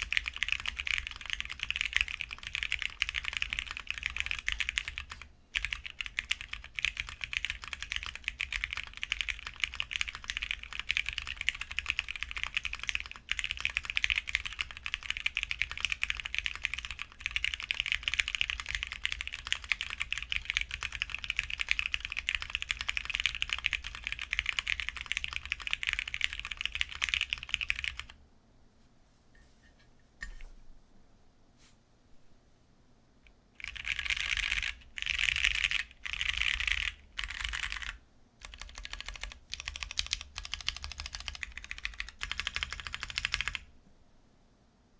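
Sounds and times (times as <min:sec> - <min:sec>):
mechanical keyboard typing: 0:00.0 - 0:28.2, 0:33.6 - 0:43.7.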